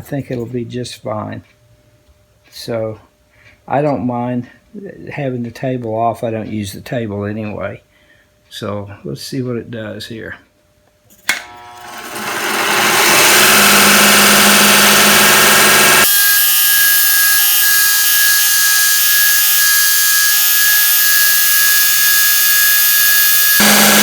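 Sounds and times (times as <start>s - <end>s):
belt sander grinding whine: 11.3s - 24.0s
belt sander motor running: 11.3s - 24.0s.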